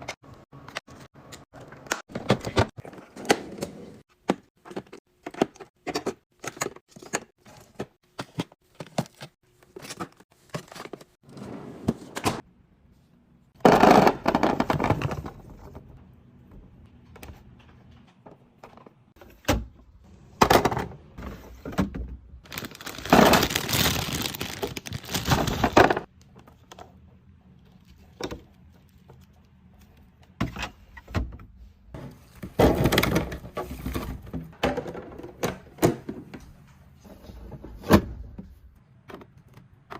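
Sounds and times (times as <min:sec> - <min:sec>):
packaging rustling: 0:22.4 - 0:26.1.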